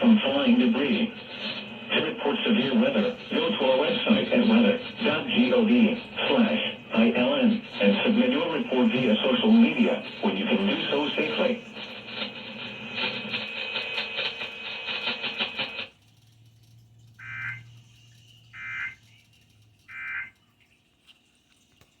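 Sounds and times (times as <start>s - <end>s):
radio broadcast buzzing: 0.0s - 15.9s, 17.2s - 17.8s, 18.5s - 20.3s
screeching digital data bursts: 17.2s - 20.3s.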